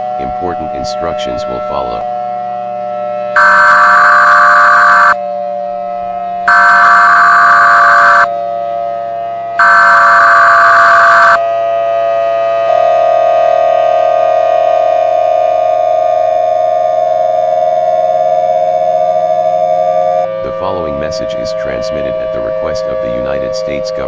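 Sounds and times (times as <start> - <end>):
loud steady alert tone: 0.0 - 2.2, 2.8 - 5.2, 6.3 - 8.3, 9.6 - 11.4, 18.8 - 24.0
buzzy data bursts: 6.5 - 8.3, 9.6 - 11.4
steady background tone: 6.5 - 8.3.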